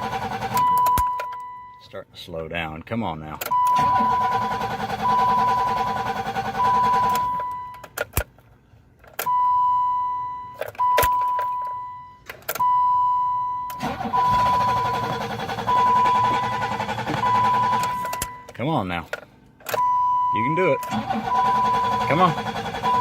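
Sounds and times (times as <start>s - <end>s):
starter motor cranking: 0.0s - 0.8s, 3.7s - 7.4s, 13.8s - 18.2s, 20.8s - 23.0s.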